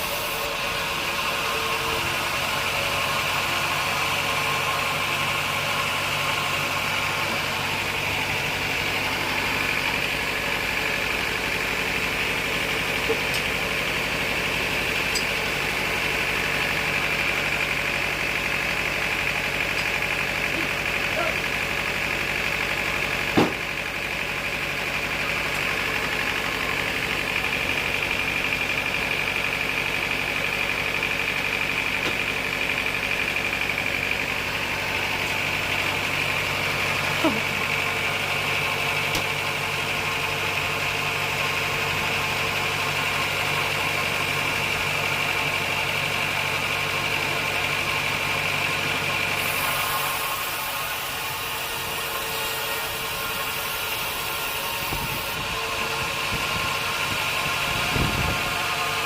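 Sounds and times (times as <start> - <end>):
sawmill machinery droning: 0.0 - 59.0
sharp knock: 23.4 - 23.6.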